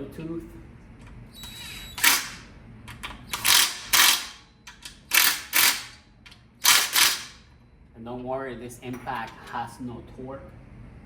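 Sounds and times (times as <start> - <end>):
impact wrench bursts: 1.4 - 2.5, 3.1 - 6.0, 6.6 - 7.4.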